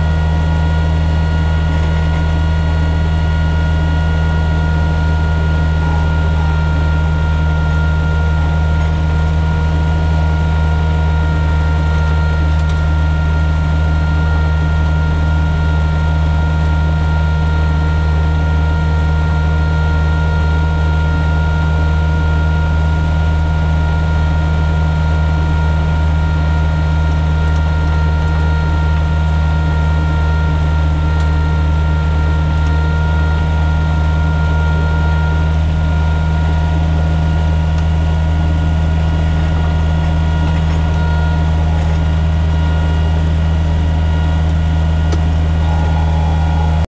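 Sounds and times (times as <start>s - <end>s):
diesel engine running: 0.0s - 46.9s
snow blower high whine: 0.0s - 46.9s.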